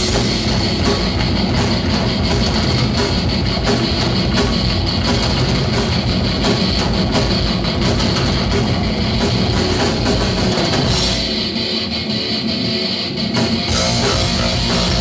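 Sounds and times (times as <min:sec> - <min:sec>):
bass guitar: 0:00.0 - 0:11.5, 0:13.3 - 0:15.0
drum kit: 0:00.0 - 0:15.0
electric guitar: 0:00.0 - 0:15.0.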